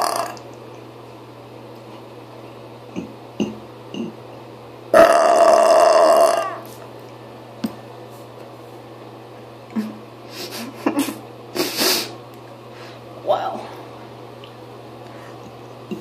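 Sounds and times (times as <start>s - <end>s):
loud burp: 0.0s - 0.4s, 4.9s - 6.6s.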